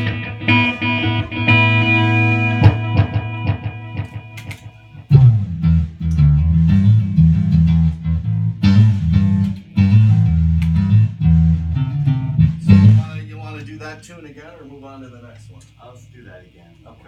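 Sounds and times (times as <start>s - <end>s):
guitar music: 0.0s - 13.2s
plucked bass notes: 0.0s - 13.2s.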